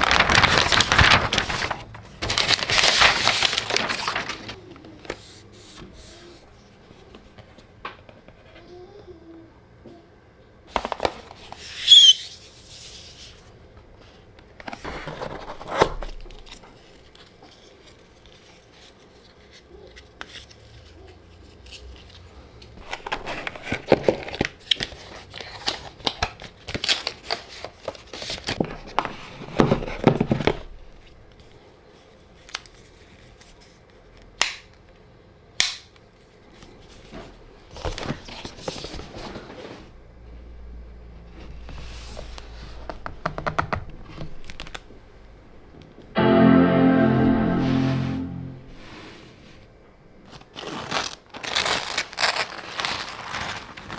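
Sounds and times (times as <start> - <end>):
packaging tearing: 0.0 - 4.6, 50.3 - 53.9.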